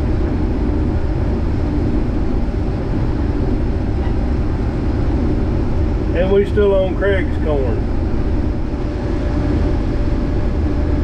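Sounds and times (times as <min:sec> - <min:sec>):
road rumble: 0:00.0 - 0:11.0
vehicle engine running: 0:00.0 - 0:11.0.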